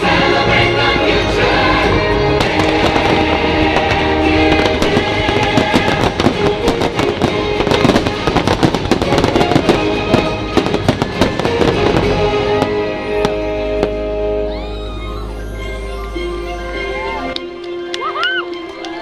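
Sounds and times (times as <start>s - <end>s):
fireworks bursting and crackling: 0.0s - 14.8s
loud music: 0.0s - 19.0s.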